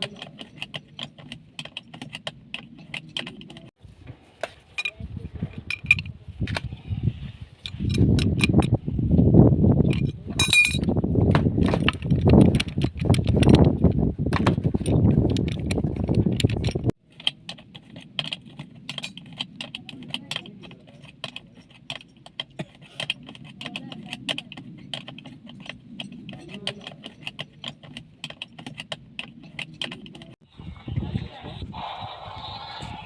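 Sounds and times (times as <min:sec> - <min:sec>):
tools and pipe fittings clinking: 0:00.0 - 0:03.7, 0:04.7 - 0:06.1, 0:07.6 - 0:08.8, 0:09.8 - 0:10.9, 0:14.7 - 0:30.4.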